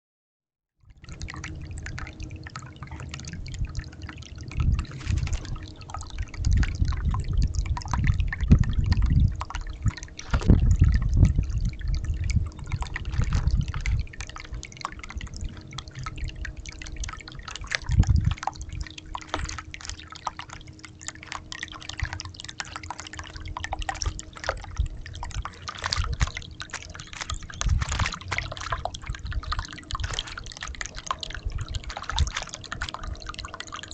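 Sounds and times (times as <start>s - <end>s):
bird splashing in water: 17.2s - 33.6s.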